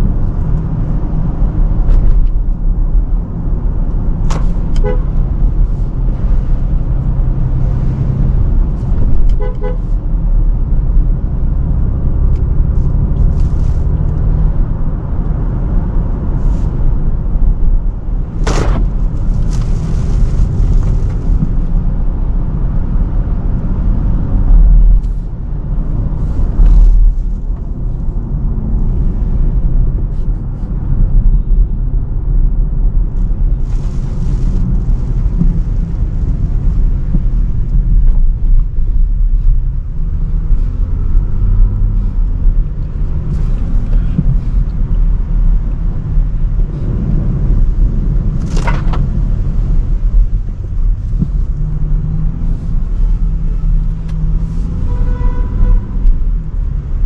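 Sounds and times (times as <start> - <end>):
car road and engine rumble: 0.0 - 57.0
car horn toots: 4.8 - 5.2, 9.3 - 9.9, 54.8 - 56.0.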